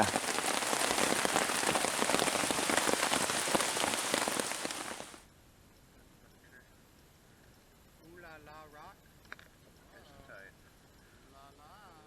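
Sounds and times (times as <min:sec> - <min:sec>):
steady rain patter: 0:00.0 - 0:05.3.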